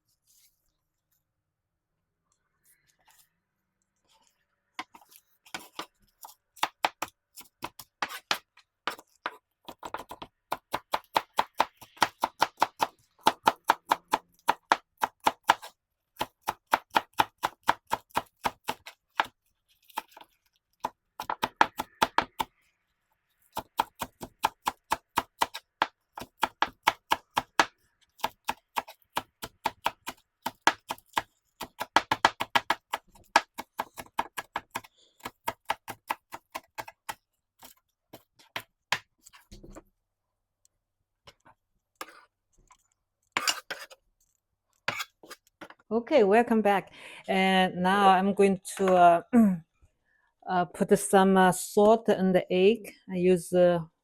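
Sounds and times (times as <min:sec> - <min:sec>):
knife chopping on cutting board: 0:04.9 - 0:19.3, 0:23.6 - 0:39.1, 0:44.9 - 0:45.7.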